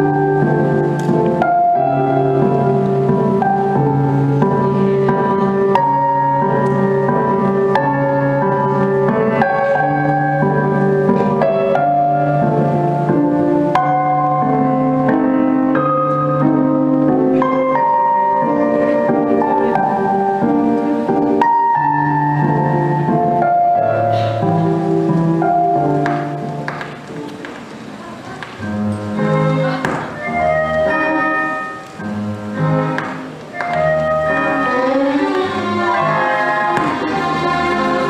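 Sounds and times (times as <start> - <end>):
gentle piano music: 0.0 - 38.0.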